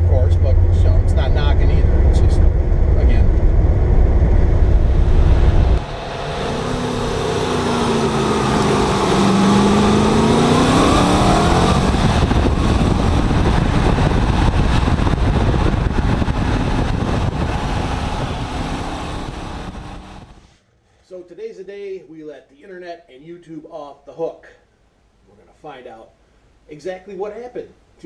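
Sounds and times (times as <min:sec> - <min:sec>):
car engine running: 0:00.0 - 0:20.4
road and drivetrain noise: 0:00.0 - 0:20.6.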